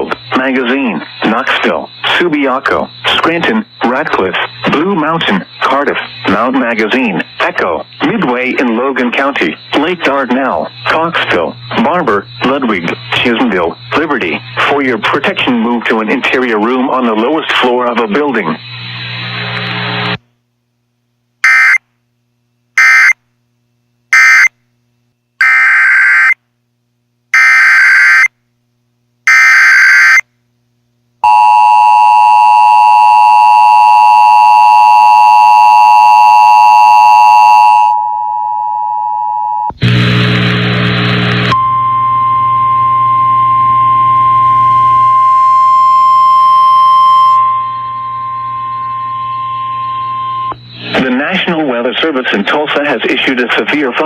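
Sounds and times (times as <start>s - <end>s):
screeching digital data bursts: 0.3s - 19.1s, 22.8s - 23.2s, 25.4s - 26.4s, 27.4s - 28.3s, 29.3s - 30.2s, 41.5s - 52.2s
single-tone warning alarm: 21.4s - 21.8s, 22.8s - 23.2s, 24.2s - 24.5s, 25.4s - 26.4s, 27.4s - 28.3s, 29.3s - 30.2s, 31.2s - 39.7s, 41.5s - 50.6s
burst of noise: 39.7s - 41.6s.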